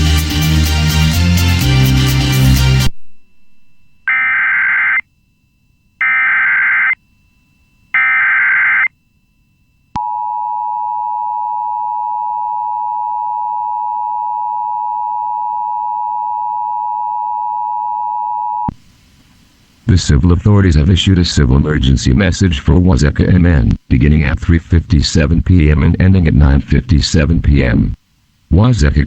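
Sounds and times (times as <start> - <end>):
warbling digital data bursts: 6.0 - 7.0.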